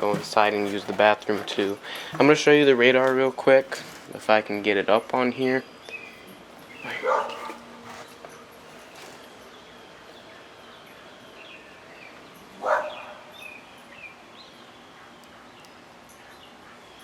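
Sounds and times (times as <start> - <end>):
faint birds chirping: 0.0 - 17.0
dog barking: 6.9 - 7.6, 12.6 - 13.3.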